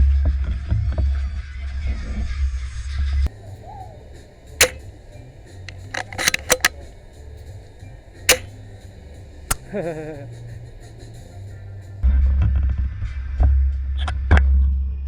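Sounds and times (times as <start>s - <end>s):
airsoft rifle bolt clicks and snaps: 4.6s - 4.8s, 5.7s - 6.7s, 8.3s - 8.5s.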